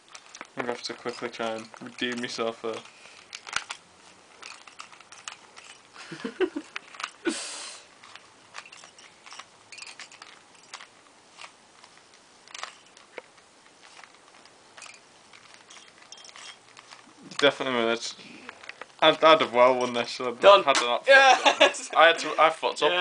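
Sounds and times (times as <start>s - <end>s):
puzzle cube clicking: 0.0s - 20.9s
short hiss: 7.2s - 7.9s.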